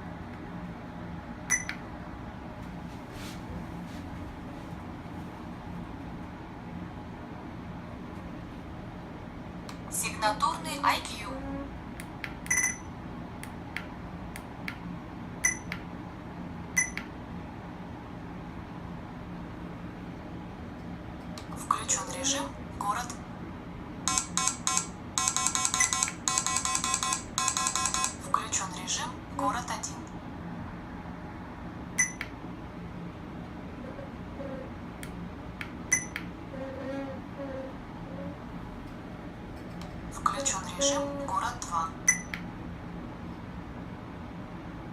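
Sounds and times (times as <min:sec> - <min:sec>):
faint low hum: 0:00.0 - 0:44.9
short electronic beeps: 0:12.5 - 0:12.8, 0:32.0 - 0:32.2.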